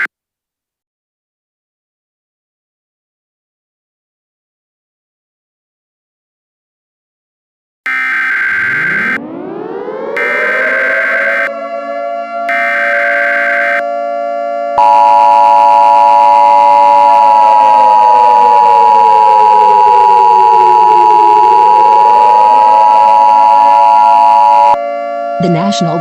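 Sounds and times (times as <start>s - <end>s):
buzzing header data: 7.9s - 11.5s, 12.5s - 13.8s, 14.8s - 24.8s
two-tone attention signal: 7.9s - 11.5s, 12.5s - 13.8s, 14.8s - 24.8s
siren sliding in pitch: 7.9s - 26.0s.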